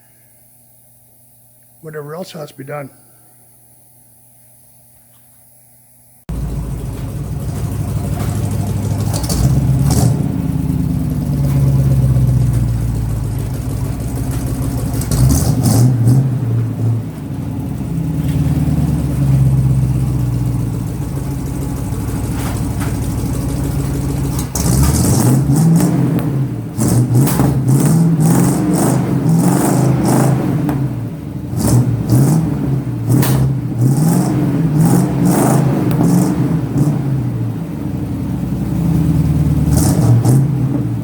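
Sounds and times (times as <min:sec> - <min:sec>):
truck engine revving: 0:06.3 - 0:41.0.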